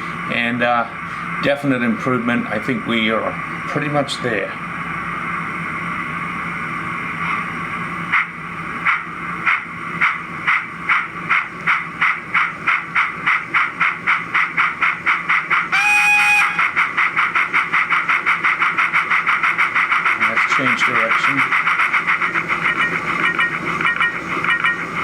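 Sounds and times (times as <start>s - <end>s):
steady steam hiss: 0.0s - 11.8s
steam locomotive exhaust chuffs: 0.0s - 25.0s.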